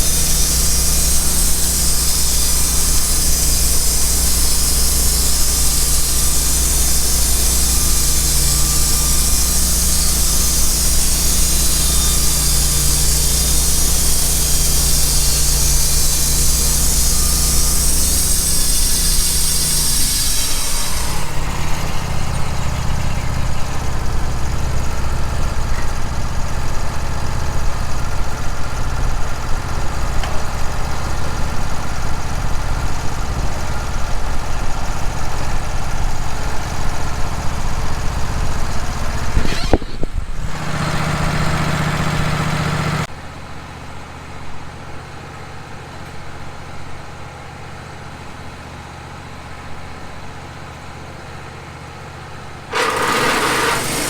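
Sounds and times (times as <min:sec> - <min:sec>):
sawmill engine running: 0:00.0 - 0:43.1, 0:52.7 - 0:54.0.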